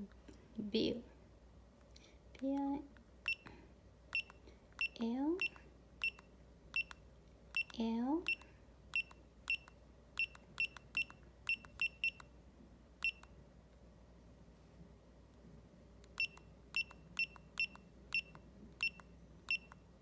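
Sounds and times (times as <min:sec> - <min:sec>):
electronic key-press beeps: 0:03.2 - 0:03.5, 0:04.1 - 0:12.3, 0:13.0 - 0:13.3, 0:16.1 - 0:19.8.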